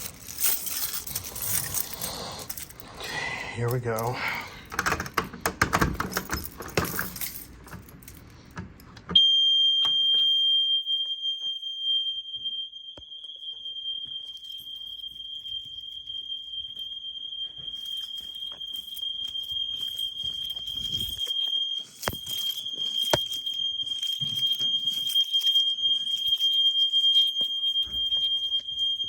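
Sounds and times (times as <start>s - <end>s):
clicks and rattling handling: 0.0s - 2.8s, 4.6s - 9.2s, 17.8s - 28.7s
fire alarm high-pitched tone: 9.2s - 29.0s.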